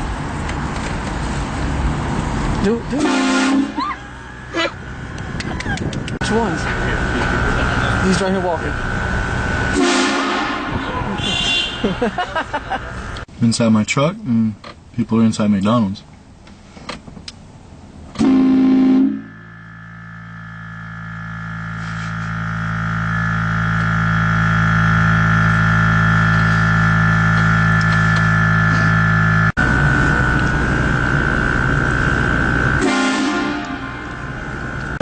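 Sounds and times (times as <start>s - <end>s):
train horn blasts: 2.9s - 3.8s, 9.6s - 11.9s, 18.2s - 19.6s, 32.7s - 34.4s.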